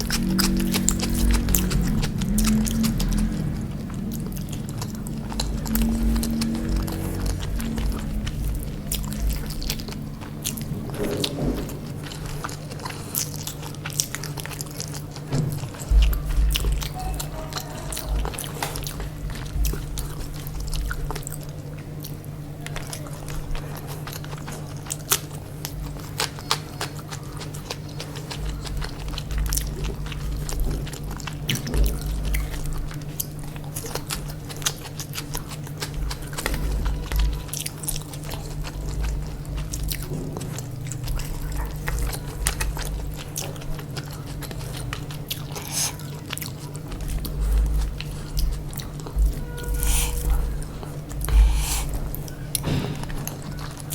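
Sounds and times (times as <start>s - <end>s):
wet mouth clicks: 0.0s - 11.4s, 41.8s - 46.6s, 48.2s - 52.4s
close chewing and biting: 0.0s - 53.9s
steady low hum: 0.0s - 53.9s.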